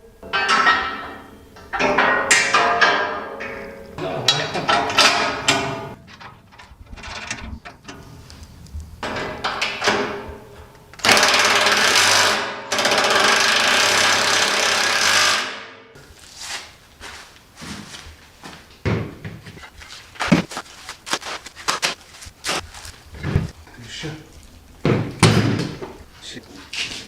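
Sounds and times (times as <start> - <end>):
parts knocking and clattering: 0.1 - 16.0, 18.4 - 23.6, 24.8 - 26.1
handheld power tool running: 11.0 - 15.5.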